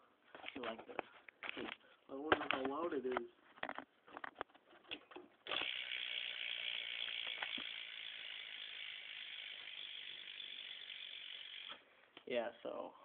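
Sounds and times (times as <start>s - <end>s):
bicycle hub ratchet clicking: 5.4s - 11.8s.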